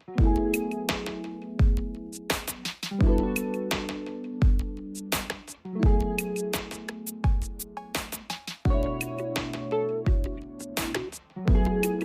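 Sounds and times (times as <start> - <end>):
kick drum and hi-hat beat: 0.0 - 12.0
plucked guitar: 0.0 - 12.0.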